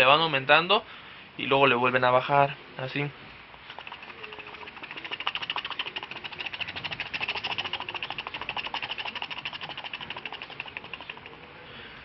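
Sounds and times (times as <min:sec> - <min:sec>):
beatboxed helicopter clicks: 0:03.7 - 0:11.5.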